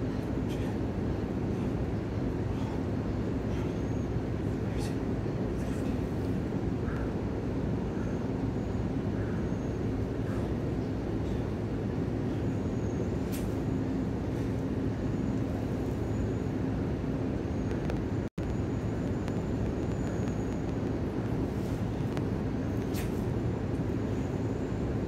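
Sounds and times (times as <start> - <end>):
low mechanical drone with hum: 0.0 - 25.0.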